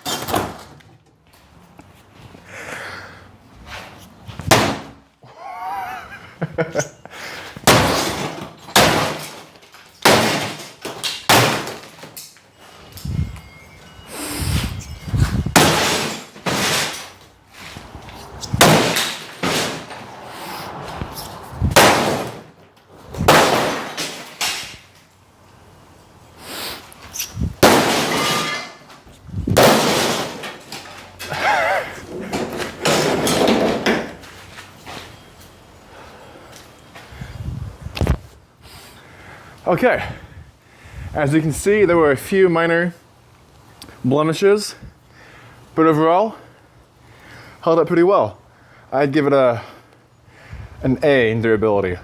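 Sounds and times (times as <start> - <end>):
sledgehammer smashing a tv: 4.4 - 5.0, 7.6 - 12.2, 15.2 - 17.2, 18.5 - 20.1, 21.6 - 22.6, 23.2 - 24.9, 27.6 - 28.9, 29.5 - 34.2.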